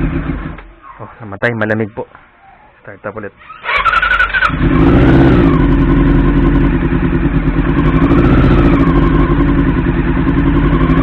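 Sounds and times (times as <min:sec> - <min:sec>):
motorcycle engine running: 0:00.0 - 0:00.8, 0:03.7 - 0:11.0.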